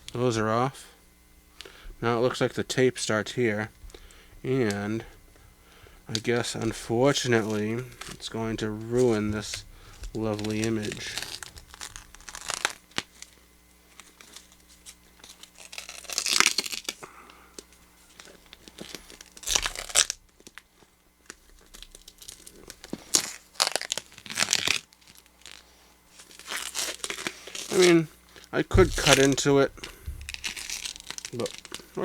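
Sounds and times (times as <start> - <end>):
tape crinkling: 3.6 - 32.0
tape ripping off a box: 9.0 - 13.3, 13.9 - 17.0, 18.1 - 20.6, 21.6 - 25.6, 26.2 - 27.9, 28.7 - 31.8.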